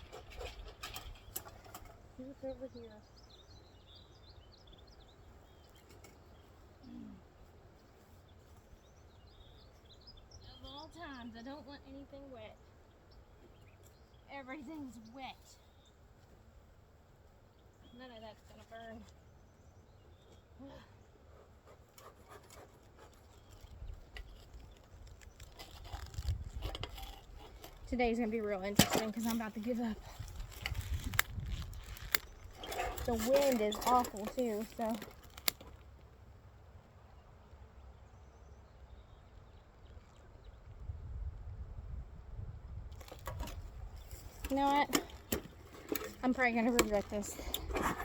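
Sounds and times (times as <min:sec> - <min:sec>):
small birds chirping: 0:00.0 - 0:36.0, 0:43.8 - 0:48.0
handling clicks and rustles: 0:21.8 - 0:36.1, 0:42.9 - 0:48.0
low wind rumble: 0:29.6 - 0:35.4, 0:36.5 - 0:48.0.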